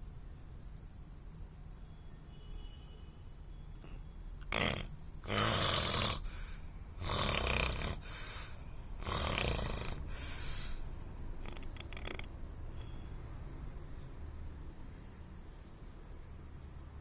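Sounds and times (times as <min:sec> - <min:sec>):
person snoring: 0:04.4 - 0:10.8, 0:11.4 - 0:12.3.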